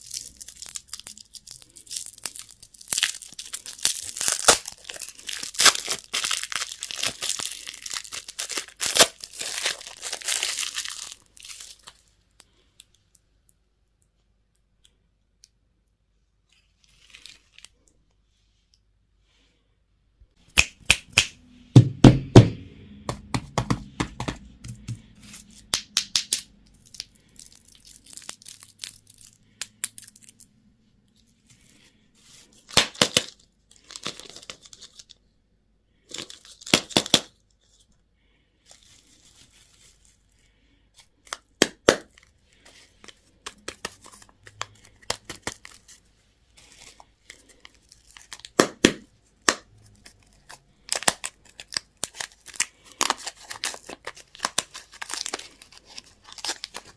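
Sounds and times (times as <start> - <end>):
packaging tearing and crinkling: 0.0 - 12.0, 24.8 - 30.4, 32.6 - 35.2, 41.3 - 46.0, 46.6 - 56.9.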